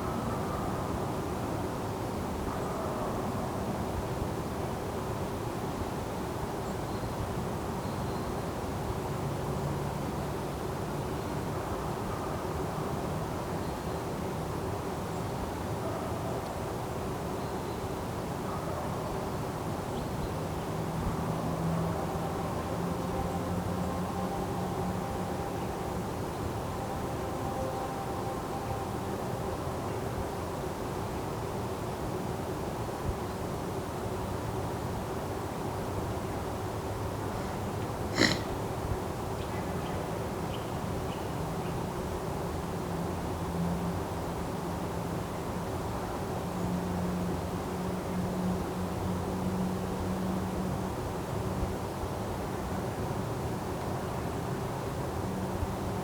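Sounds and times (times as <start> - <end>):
low forest rumble and hiss: 19.1 - 56.0.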